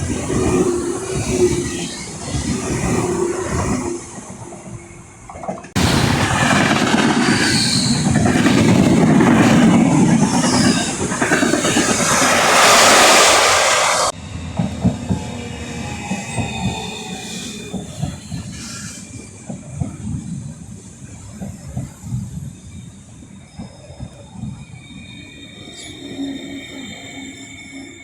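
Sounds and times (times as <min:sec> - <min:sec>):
train wheels clickety-clack: 0:00.0 - 0:26.4
loud rushing noise: 0:05.8 - 0:17.1.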